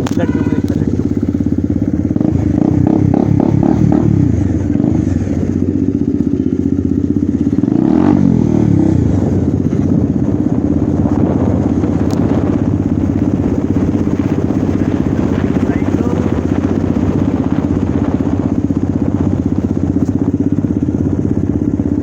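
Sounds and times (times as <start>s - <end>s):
loud motorcycle engine open pipe: 0.0s - 4.2s.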